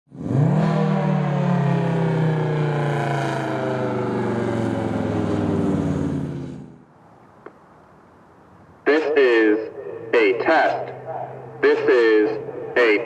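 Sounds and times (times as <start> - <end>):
warning siren whooping: 0.6 - 6.6, 9.5 - 13.0.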